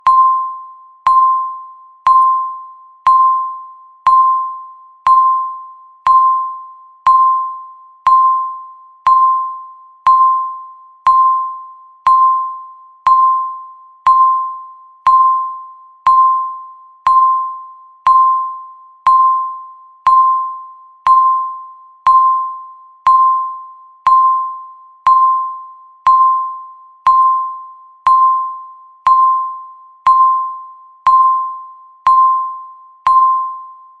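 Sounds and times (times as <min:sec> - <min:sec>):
countdown timer beeps: 0:00.0 - 0:34.0.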